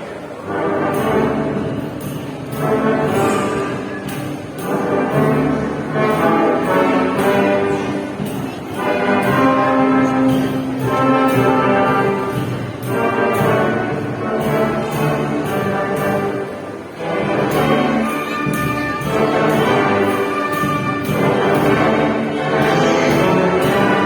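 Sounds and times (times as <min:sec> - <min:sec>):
orchestra playing brass chords: 0:00.0 - 0:24.0.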